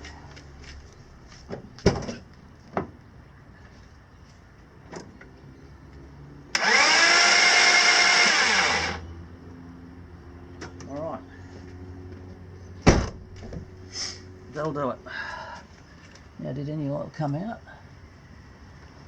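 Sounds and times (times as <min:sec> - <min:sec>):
starter motor cranking engine: 0:06.5 - 0:09.0.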